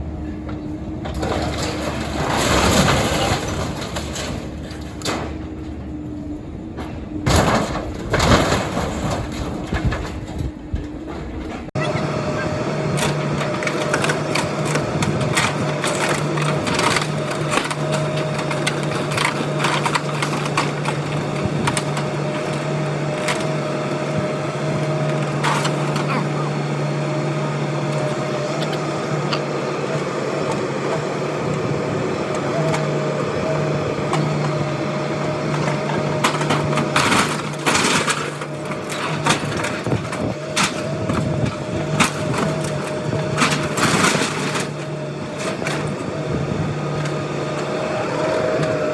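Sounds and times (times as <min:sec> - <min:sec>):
excavator diesel engine running: 0:00.0 - 0:48.9.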